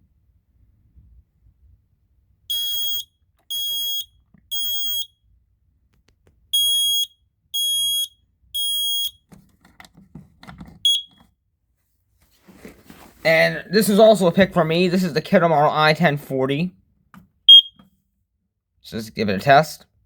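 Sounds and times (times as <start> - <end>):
smoke alarm beeping: 2.5 - 5.2, 6.5 - 9.2, 10.8 - 11.2, 17.5 - 17.8
smoke alarm chirp: 2.5 - 5.2, 6.5 - 9.2, 10.9 - 11.2, 17.5 - 17.8.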